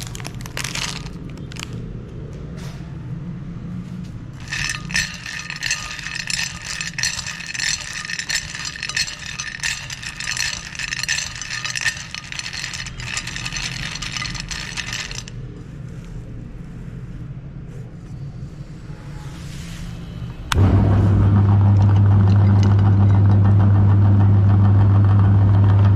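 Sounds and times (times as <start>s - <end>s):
grinder crunching chocolate: 0.0s - 1.8s, 4.4s - 15.3s.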